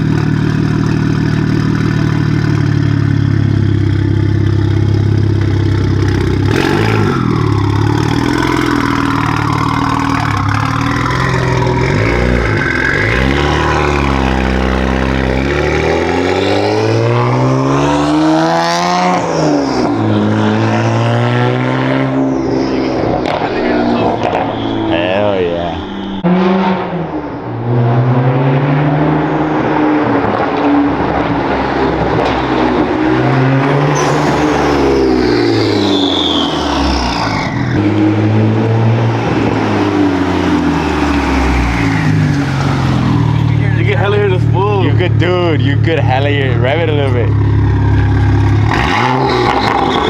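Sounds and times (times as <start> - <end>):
car engine revving: 0.0 - 50.0
high whine gliding down: 19.2 - 27.7, 33.8 - 37.7.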